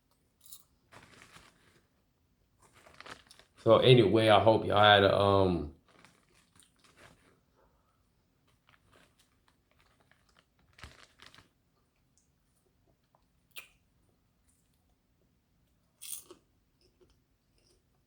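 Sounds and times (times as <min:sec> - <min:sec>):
chewing popcorn: 0:00.4 - 0:02.0, 0:02.6 - 0:03.7, 0:05.8 - 0:13.8, 0:15.7 - 0:18.0
crisp crunches: 0:00.4 - 0:02.0, 0:02.6 - 0:03.9, 0:05.8 - 0:07.5, 0:08.5 - 0:11.6.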